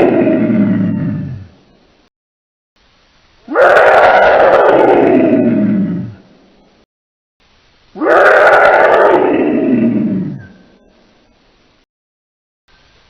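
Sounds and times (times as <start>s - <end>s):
dinosaur roar: 0.0s - 1.6s, 3.5s - 6.3s, 8.0s - 10.7s.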